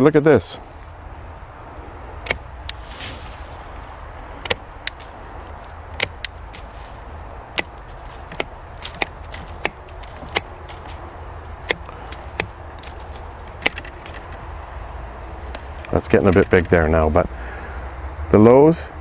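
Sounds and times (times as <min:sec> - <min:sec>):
low outdoor background: 0:00.0 - 0:19.0
pruner snapping through branch: 0:02.2 - 0:03.2, 0:04.4 - 0:06.7, 0:07.5 - 0:11.0, 0:11.6 - 0:14.4.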